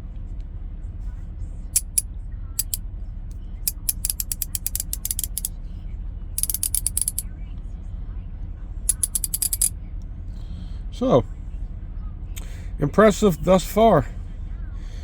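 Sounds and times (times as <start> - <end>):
ratchet clicking: 1.8 - 2.0, 2.6 - 2.8, 3.7 - 5.5, 6.4 - 7.2, 8.9 - 9.7.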